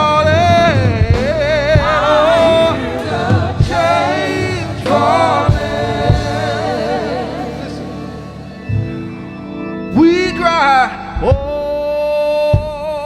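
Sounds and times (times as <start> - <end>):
voices singing long notes: 0.0 - 13.0
low thumps: 0.5 - 9.2.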